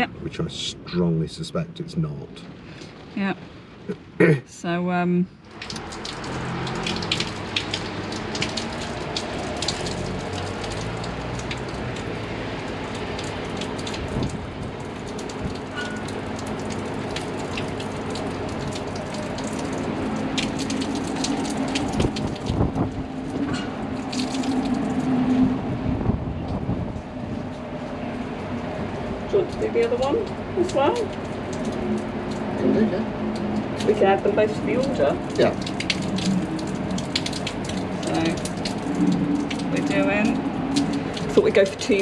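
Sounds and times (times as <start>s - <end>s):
steady rain: 0.0s - 42.0s.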